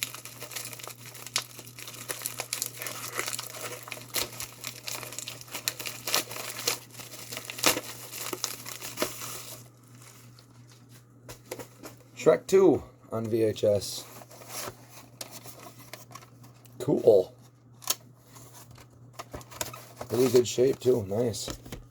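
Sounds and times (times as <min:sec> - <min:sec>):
package wrapping tearing and crinkling: 0:00.0 - 0:12.0, 0:18.7 - 0:21.2.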